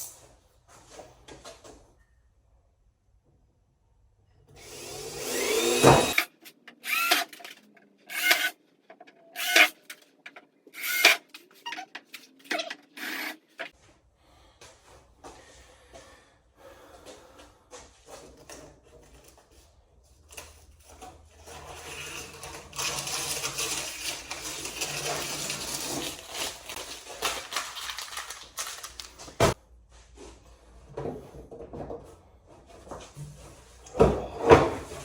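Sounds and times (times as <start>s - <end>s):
rubbing and scraping: 18.2s - 29.6s.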